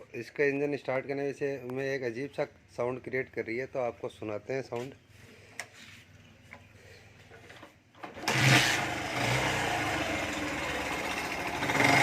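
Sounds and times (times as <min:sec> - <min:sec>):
motorcycle engine running: 0:08.2 - 0:12.0.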